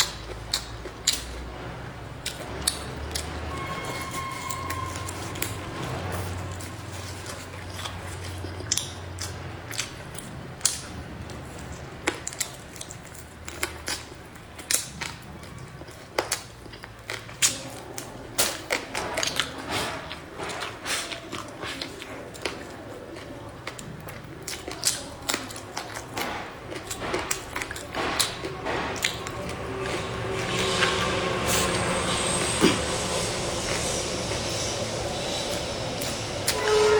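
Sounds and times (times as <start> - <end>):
low hum: 28.4 - 36.9.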